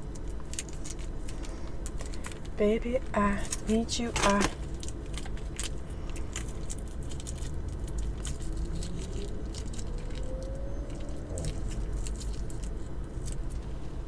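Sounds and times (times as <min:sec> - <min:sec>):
wet chewing and biting: 0:03.4 - 0:14.0.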